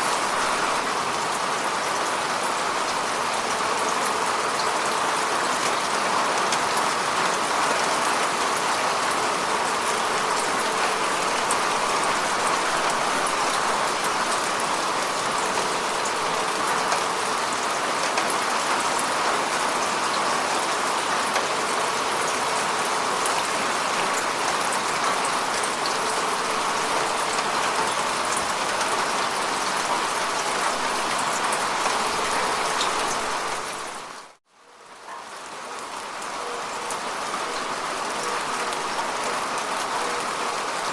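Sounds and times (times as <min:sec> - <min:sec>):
rain falling on water: 0:00.0 - 0:40.9.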